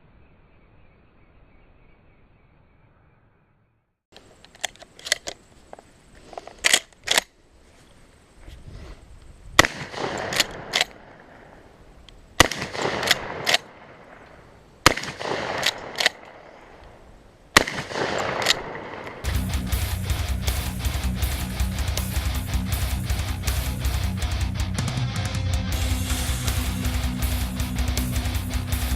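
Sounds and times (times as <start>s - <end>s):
light clicks of gun action: 4.2s - 7.3s, 9.2s - 11.3s, 12.0s - 17.0s, 17.6s - 19.3s
shotgun shots echoing: 9.6s - 11.7s, 12.4s - 19.5s.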